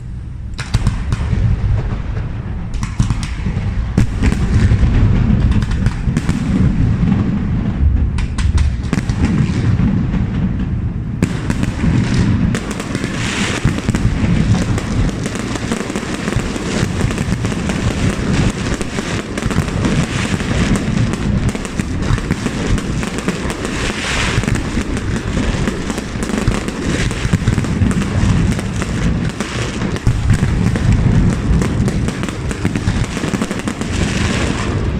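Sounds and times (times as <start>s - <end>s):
deep booming firework bursts: 0.0s - 34.9s
fireworks crackling: 0.0s - 34.9s
sharp firework bangs: 0.0s - 34.9s.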